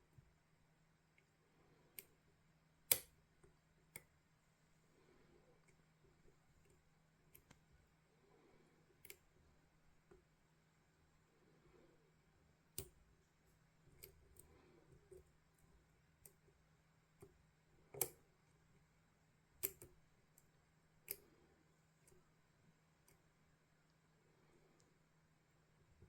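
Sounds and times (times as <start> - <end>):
lock pick clicks: 2.9 - 3.2.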